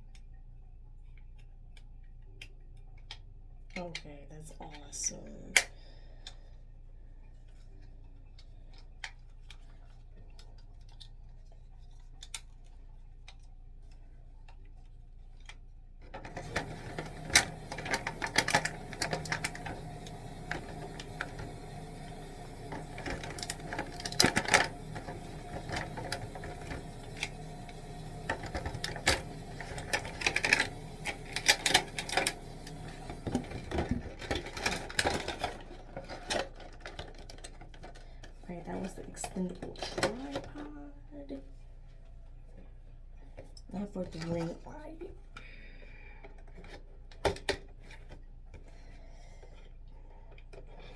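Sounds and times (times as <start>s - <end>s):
plastic parts clicking and rattling: 7.4s - 40.8s, 46.2s - 49.7s.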